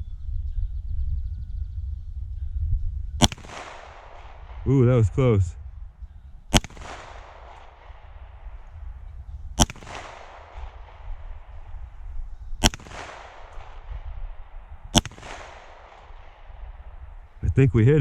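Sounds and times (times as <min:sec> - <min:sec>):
pistol shots echoing: 0:03.2 - 0:17.4.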